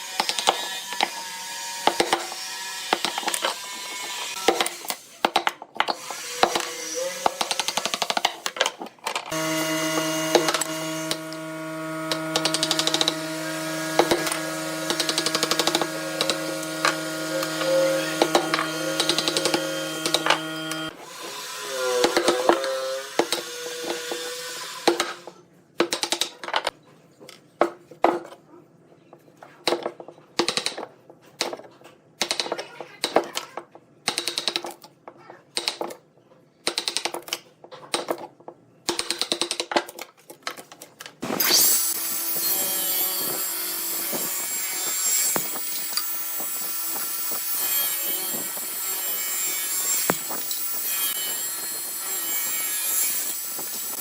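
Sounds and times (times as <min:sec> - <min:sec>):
woodworking machine motor hum: 0:09.3 - 0:21.9
tool cutting into wood: 0:09.3 - 0:25.1, 0:41.2 - 0:54.0.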